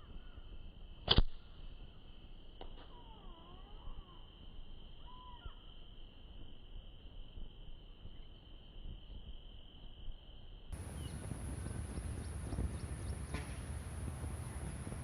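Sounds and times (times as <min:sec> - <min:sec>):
insects trilling: 0:01.8 - 0:15.0
whistled bird call: 0:02.8 - 0:04.3, 0:05.0 - 0:05.7, 0:10.8 - 0:13.7
loud high insect drone: 0:02.9 - 0:05.8, 0:08.1 - 0:15.0.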